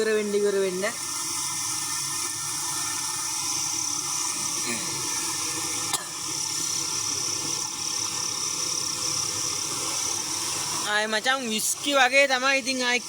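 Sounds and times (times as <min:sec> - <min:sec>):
insect chorus: 0:03.2 - 0:13.0.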